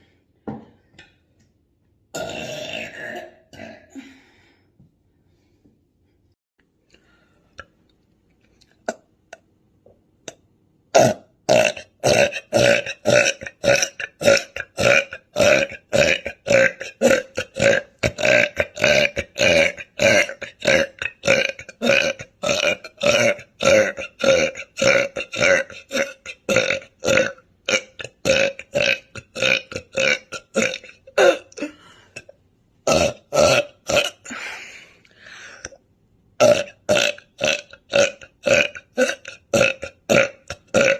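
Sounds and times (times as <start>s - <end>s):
woman burping: 2.1s - 4.1s, 10.3s - 34.6s, 36.4s - 40.9s.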